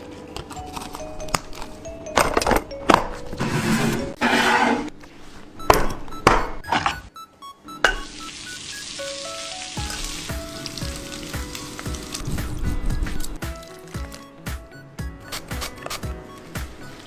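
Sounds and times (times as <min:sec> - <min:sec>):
background music: 0:00.0 - 0:04.9, 0:05.6 - 0:17.0
food sizzling in a hot pan: 0:07.9 - 0:13.3.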